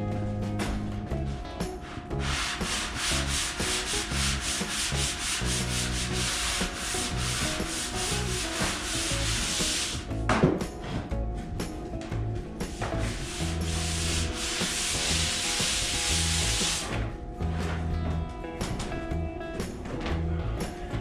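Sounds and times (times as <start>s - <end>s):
hand sanding rasping strokes: 1.8s - 10.1s, 12.7s - 17.0s.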